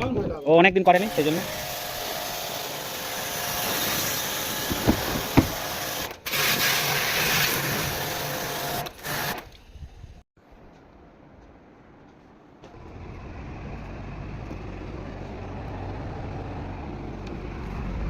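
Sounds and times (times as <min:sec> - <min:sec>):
pressure washer spraying water: 0:01.0 - 0:09.4.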